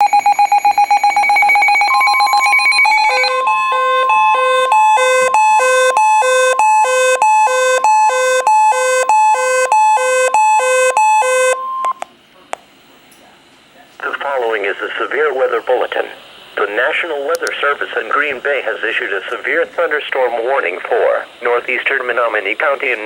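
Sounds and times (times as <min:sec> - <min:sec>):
alternating low and high alarm beeps: 0:00.0 - 0:12.0
fast-pulsing beep: 0:00.0 - 0:12.0
steady high warning tone: 0:00.0 - 0:12.0.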